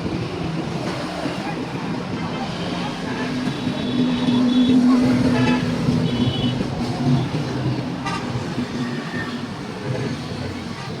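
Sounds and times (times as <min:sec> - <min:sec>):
road traffic noise: 0:00.0 - 0:11.0.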